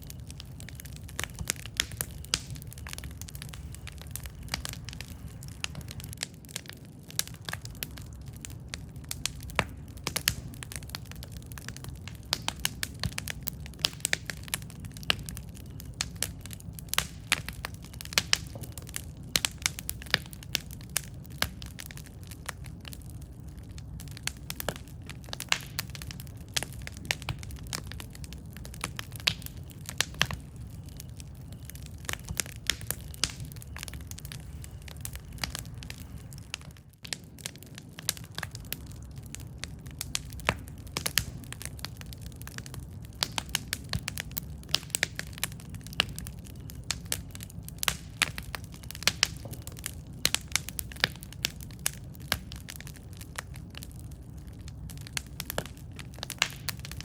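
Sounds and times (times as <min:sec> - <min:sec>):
low rumble of burning: 0:00.0 - 0:57.0
wood fire crackling: 0:00.0 - 0:57.0.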